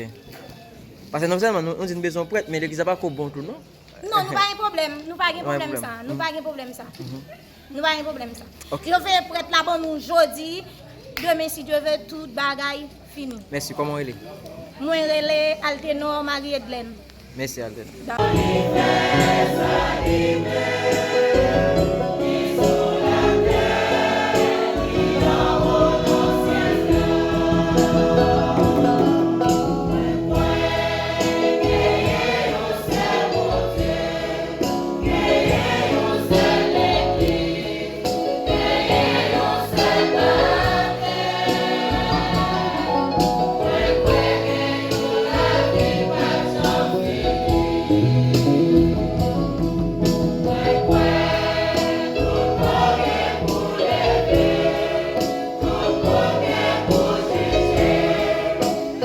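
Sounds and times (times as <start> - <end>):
choir singing a hymn: 18.2 - 59.0
instruments: 18.2 - 59.0.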